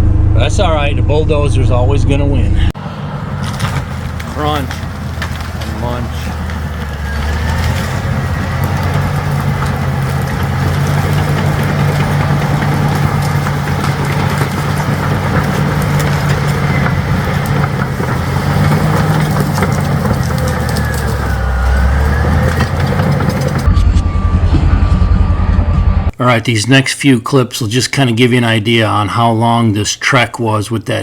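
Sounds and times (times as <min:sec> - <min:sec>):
bulldozer diesel engine running: 0:00.0 - 0:26.1
clicks and cracks: 0:03.4 - 0:23.7.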